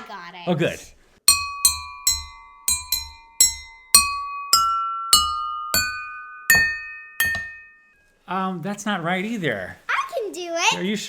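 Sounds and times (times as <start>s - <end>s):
water glasses ringing: 1.3s - 8.2s.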